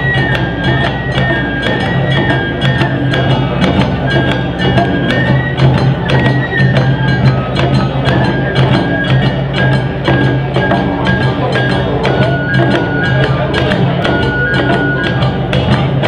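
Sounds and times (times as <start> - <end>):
drums and hand gongs rhythm: 0.0 - 16.0
high held melody: 0.0 - 16.0.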